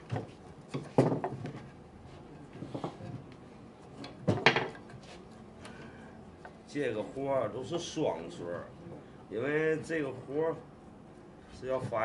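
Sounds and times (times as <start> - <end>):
wooden boards knocking: 0.1 - 1.6, 4.2 - 4.8.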